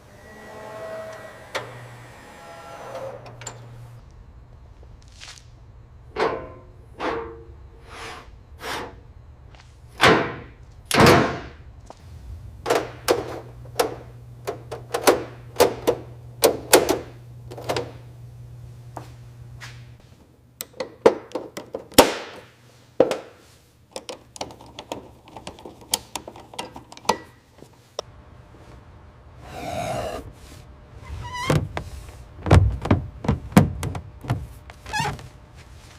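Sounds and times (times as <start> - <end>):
low steady hum: 0.0 - 20.7, 23.6 - 35.9
knocks and clanks: 31.4 - 35.2.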